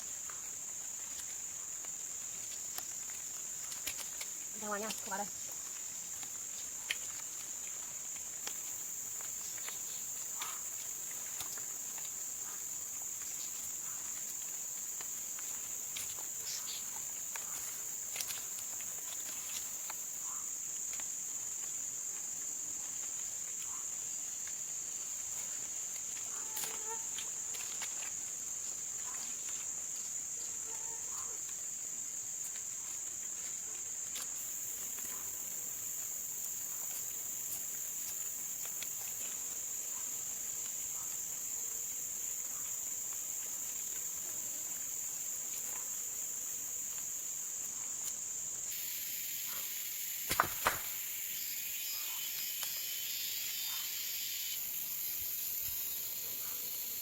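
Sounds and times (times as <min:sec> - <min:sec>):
insects buzzing: 0:00.0 - 0:57.0
hiss: 0:48.0 - 0:57.0.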